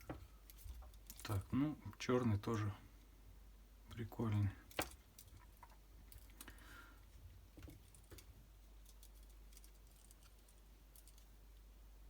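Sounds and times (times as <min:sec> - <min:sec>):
faint clicks of small objects: 0:03.9 - 0:07.0, 0:07.6 - 0:11.7.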